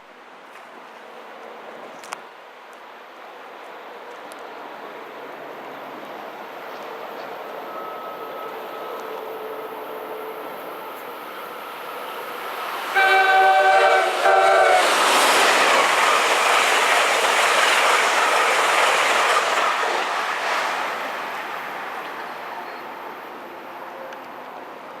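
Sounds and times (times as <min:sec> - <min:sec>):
train passing at speed: 0:00.2 - 0:25.0
train horn: 0:07.7 - 0:11.1, 0:12.9 - 0:15.2.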